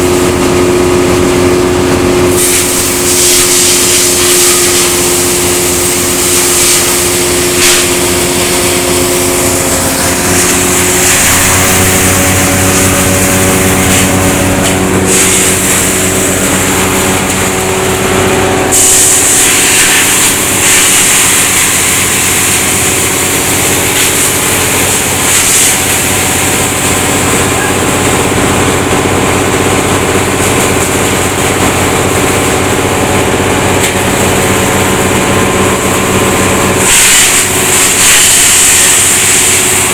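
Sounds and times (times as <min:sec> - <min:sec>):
wood chipper engine running: 0:00.0 - 0:39.9
loud hiss: 0:02.3 - 0:27.4, 0:34.0 - 0:39.9.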